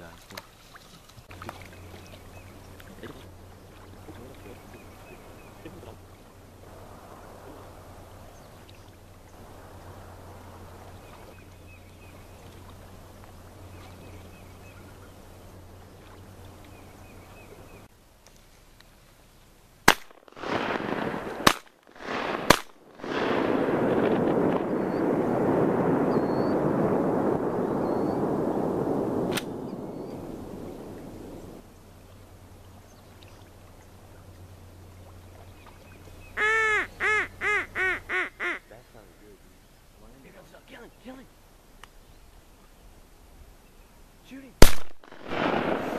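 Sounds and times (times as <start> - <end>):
shotgun shots: 19.9 - 24.7, 44.6 - 45.9
duck quacking: 36.4 - 38.8.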